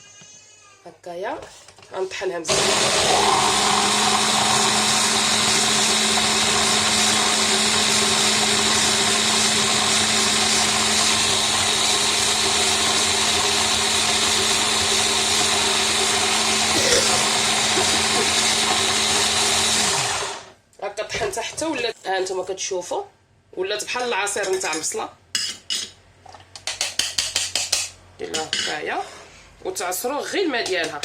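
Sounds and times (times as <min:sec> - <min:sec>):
electric blender running: 0:02.5 - 0:20.6.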